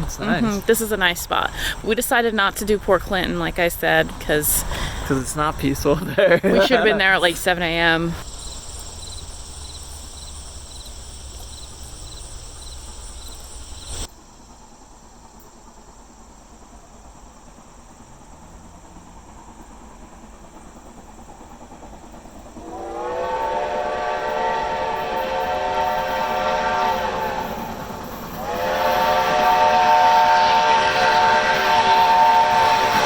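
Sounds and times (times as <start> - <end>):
insect chirp: 0.0 - 33.0
insects chirring: 0.0 - 33.0
hiss: 7.8 - 33.0
steam locomotive chime whistle: 22.6 - 33.0.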